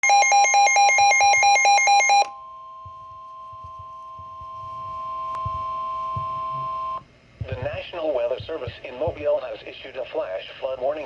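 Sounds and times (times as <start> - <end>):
rapid electronic beeping alarm: 0.0 - 7.0.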